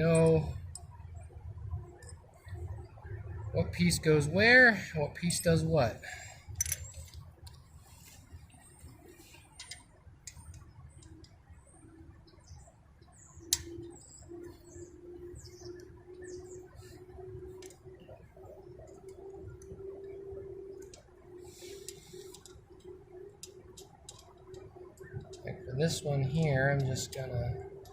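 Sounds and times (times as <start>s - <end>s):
steady low hum: 0.0s - 27.9s
metallic clicks of bolts and tools: 6.4s - 7.6s, 9.5s - 11.1s, 23.4s - 25.4s.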